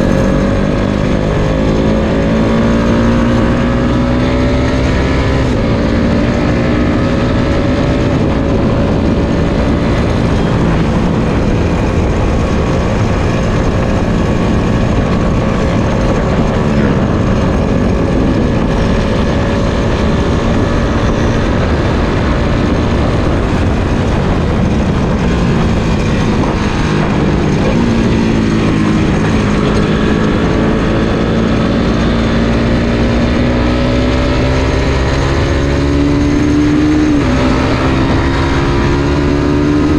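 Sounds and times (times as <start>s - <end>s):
motorcycle engine under way: 0.0s - 39.9s
wind and road noise: 0.0s - 39.9s.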